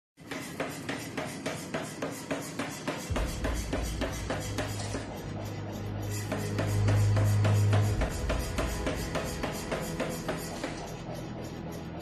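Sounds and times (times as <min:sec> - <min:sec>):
power hammer striking metal: 0:00.2 - 0:11.2
low steady drone: 0:03.1 - 0:12.0.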